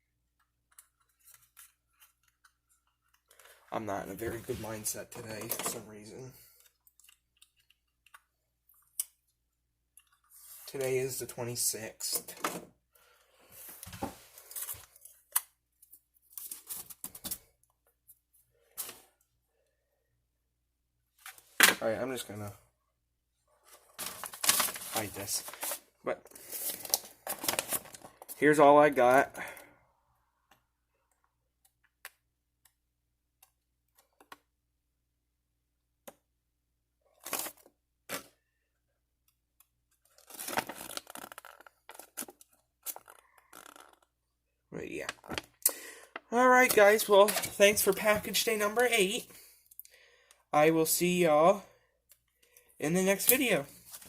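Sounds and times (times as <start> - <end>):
paper rustling: 23.6 - 28.3.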